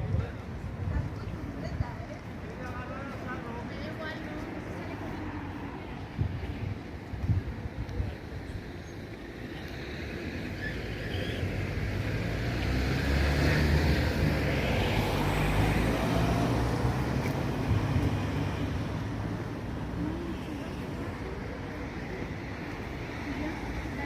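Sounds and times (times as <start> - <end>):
vehicle passing by: 11.0 - 21.8.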